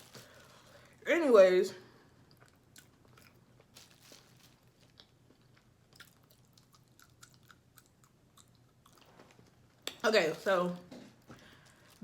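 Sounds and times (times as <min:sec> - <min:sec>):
wet chewing mouth clicks: 0:06.0 - 0:09.0.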